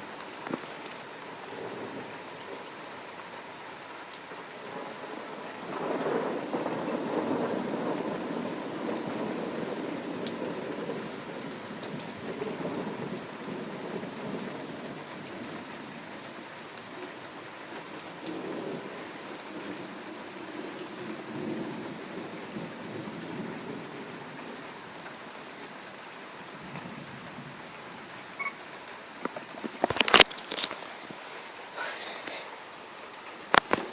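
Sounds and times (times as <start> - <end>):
rain falling: 0.0 - 33.9
rolling thunder: 4.9 - 15.6.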